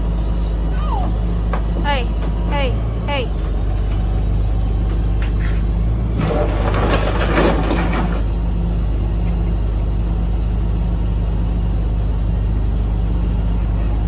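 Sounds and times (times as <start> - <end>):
vehicle engine humming: 0.0 - 14.0.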